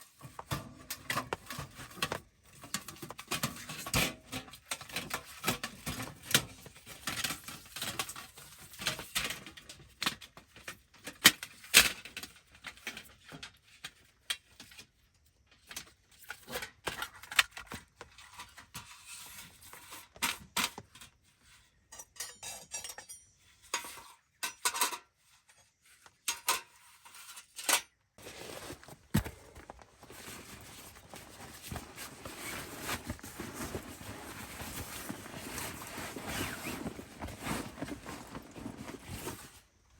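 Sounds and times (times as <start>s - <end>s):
dishes and utensils clinking: 21.9s - 25.1s.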